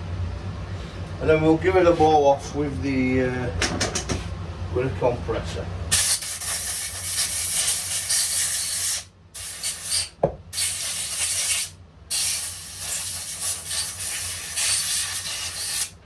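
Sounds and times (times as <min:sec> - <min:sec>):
compressed air blow gun hissing: 0:05.9 - 0:16.0.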